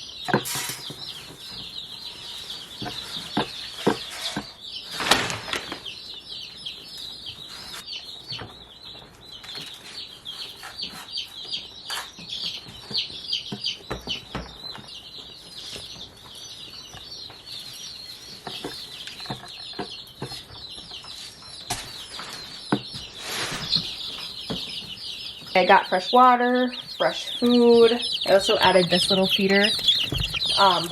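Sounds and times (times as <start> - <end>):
baby chicks peeping: 0.0 - 30.9
light knocks and rustles: 28.1 - 30.9.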